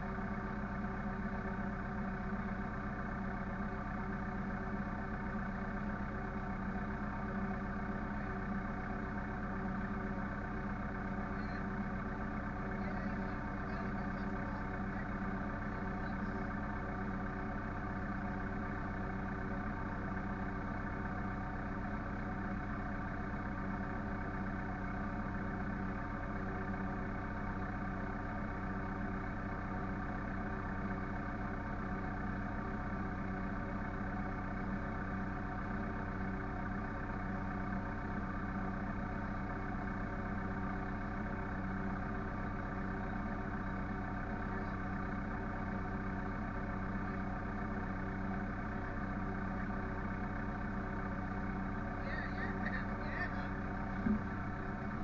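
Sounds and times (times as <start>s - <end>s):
farm machinery engine drone: 0.0s - 55.0s.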